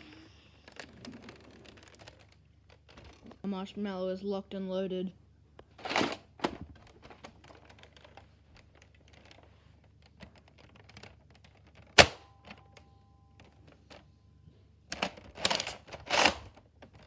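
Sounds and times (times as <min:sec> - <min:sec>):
plastic toy blaster clicks and rattles: 0:00.7 - 0:03.4, 0:05.8 - 0:12.6, 0:14.9 - 0:17.0.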